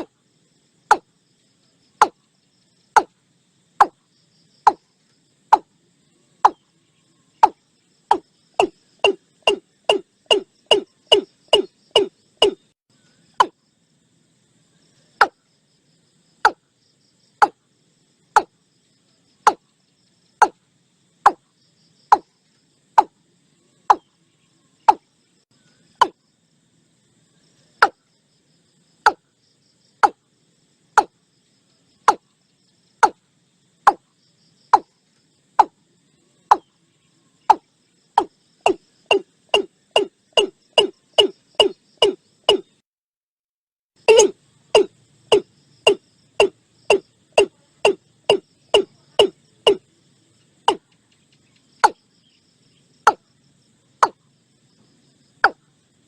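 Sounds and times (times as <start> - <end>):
bird calling hollow notes: 7.4 - 12.7, 13.3 - 13.6, 18.3 - 18.6, 19.4 - 19.7, 23.9 - 24.1, 24.8 - 25.1, 29.0 - 29.2, 32.0 - 32.3, 36.5 - 36.7, 37.5 - 42.8, 44.0 - 49.8, 50.7 - 50.9, 51.8 - 52.0.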